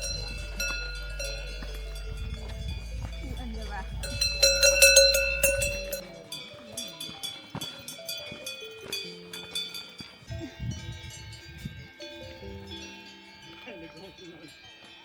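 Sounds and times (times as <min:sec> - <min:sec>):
cowbells clanking: 0:00.0 - 0:15.0.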